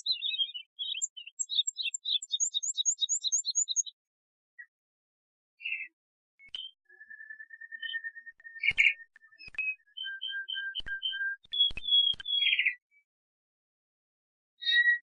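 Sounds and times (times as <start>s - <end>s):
canary singing: 0.0s - 3.9s, 6.6s - 12.8s.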